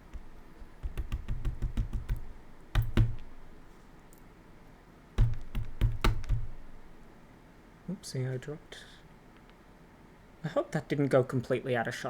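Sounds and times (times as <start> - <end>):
louder knocks: 5.2 - 6.6.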